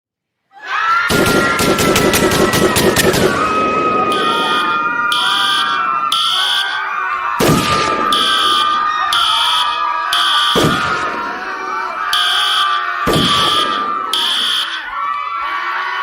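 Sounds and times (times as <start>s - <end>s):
people screaming: 0.5s - 16.0s
rapid gunshots: 1.1s - 4.6s, 7.4s - 8.8s, 10.5s - 11.4s, 13.1s - 14.5s
alarm beeping: 3.2s - 6.8s, 7.8s - 11.1s, 12.1s - 14.8s.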